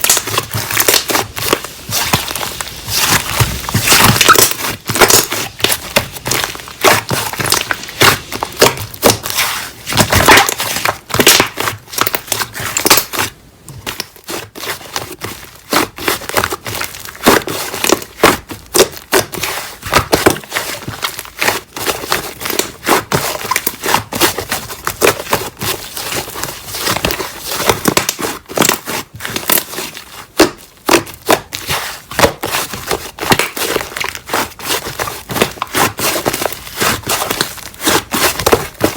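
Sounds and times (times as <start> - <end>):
slime squished by hand: 0.0 - 38.9.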